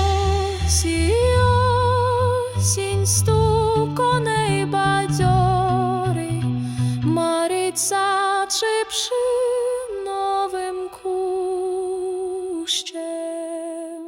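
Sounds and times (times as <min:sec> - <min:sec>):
low musical accompaniment: 0:00.0 - 0:07.9
person singing wordless notes: 0:00.0 - 0:13.6
singer breathing: 0:06.5 - 0:07.1.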